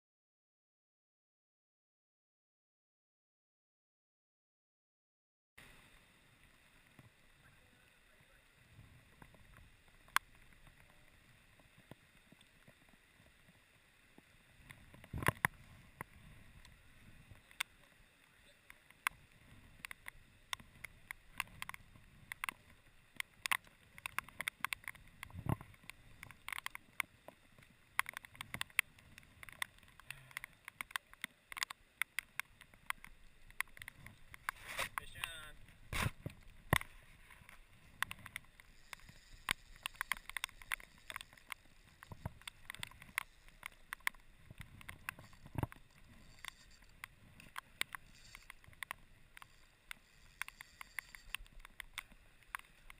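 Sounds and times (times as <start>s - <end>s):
raindrops ticking on plastic housing: 18.6s - 52.9s.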